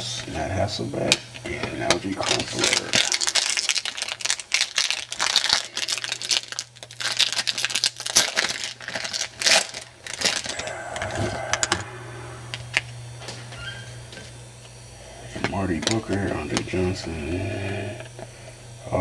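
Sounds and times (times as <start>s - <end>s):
low hum: 0.0s - 19.0s
cards being handled: 1.5s - 10.6s
wrapper crinkling and tearing: 1.9s - 10.7s.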